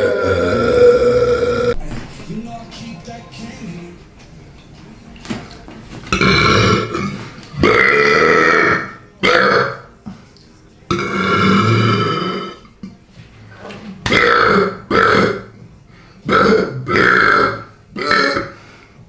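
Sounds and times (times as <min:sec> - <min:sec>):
person belching loudly: 0:00.0 - 0:01.8, 0:06.1 - 0:09.9, 0:10.9 - 0:12.7, 0:14.1 - 0:15.5, 0:16.3 - 0:18.6.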